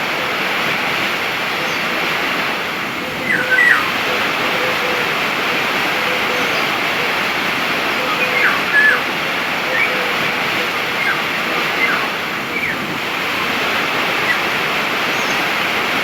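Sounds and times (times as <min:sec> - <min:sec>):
waterfall rushing: 0:00.0 - 0:16.0
bird whistled calls: 0:03.0 - 0:07.2, 0:07.9 - 0:12.8.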